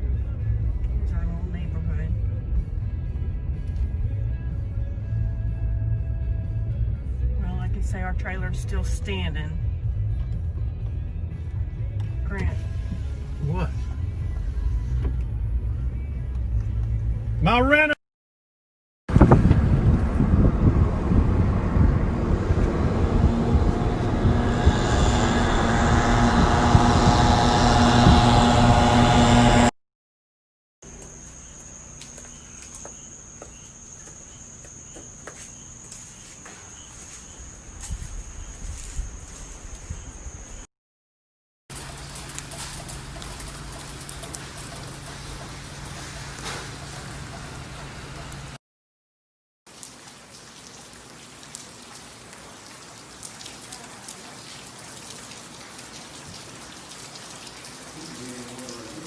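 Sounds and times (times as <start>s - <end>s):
low rumble: 19.1s - 29.8s
crickets trilling: 30.8s - 40.6s
steady rain falling: 41.7s - 48.5s, 49.7s - 59.0s
raindrops ticking close by: 41.7s - 48.6s, 49.7s - 59.0s.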